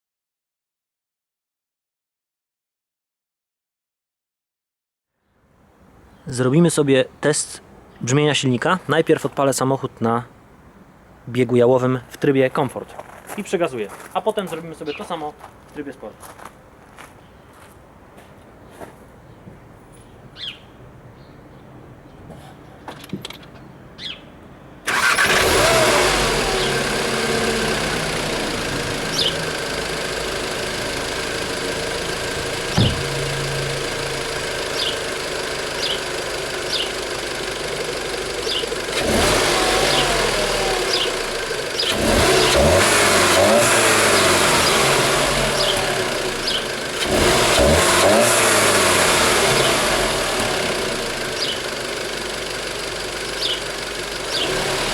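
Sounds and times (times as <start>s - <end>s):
car engine starting and idling: 24.9s - 54.9s
engine revving: 24.9s - 54.9s.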